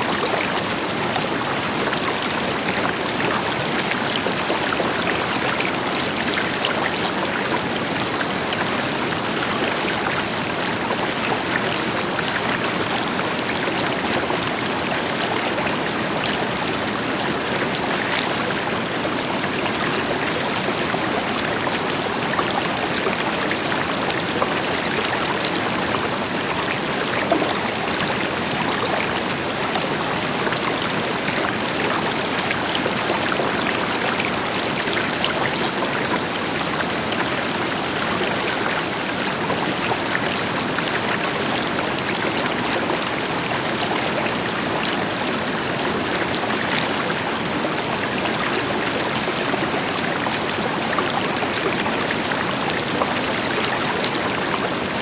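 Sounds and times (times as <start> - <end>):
river flowing over rocks: 0.0 - 55.0.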